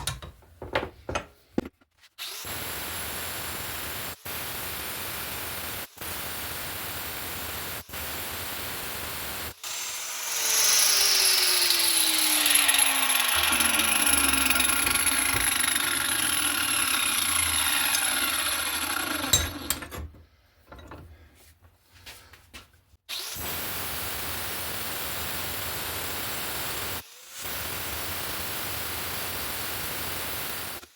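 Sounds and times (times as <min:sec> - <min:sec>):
power tool cutting: 0:02.2 - 0:20.0, 0:25.3 - 0:30.9.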